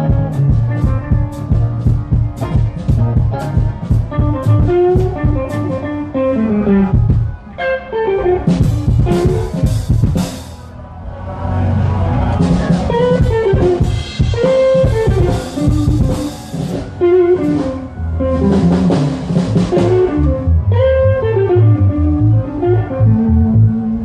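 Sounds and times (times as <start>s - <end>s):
drum kit: 0.0s - 7.4s, 8.4s - 10.7s, 12.3s - 20.5s
bluesy guitar line: 0.0s - 24.0s
low bass notes: 0.0s - 24.0s.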